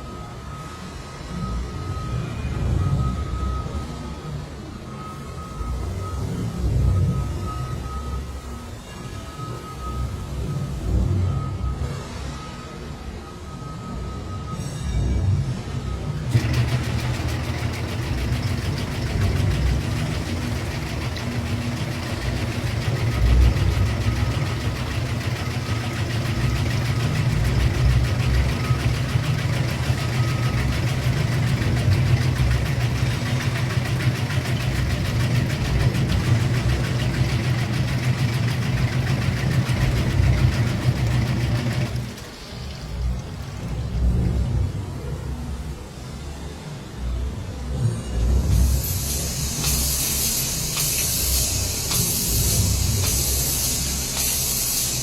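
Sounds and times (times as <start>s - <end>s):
machine motor hum and rattle: 15.4s - 45.6s, 48.0s - 55.0s.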